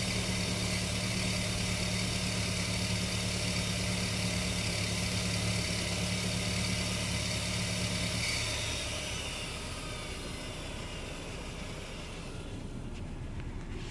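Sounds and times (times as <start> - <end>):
car engine idling: 0.0 - 13.9.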